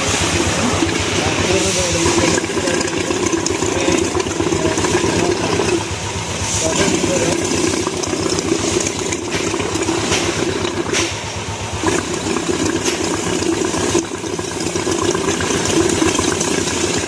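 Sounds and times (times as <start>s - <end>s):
motorcycle engine idling: 3.8s - 12.2s.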